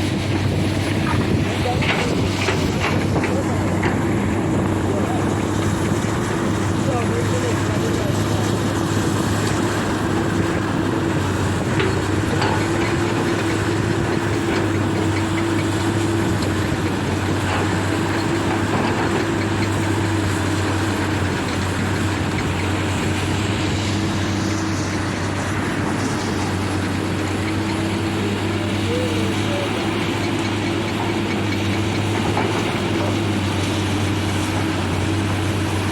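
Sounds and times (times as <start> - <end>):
diesel engine running steadily: 0.0 - 35.9.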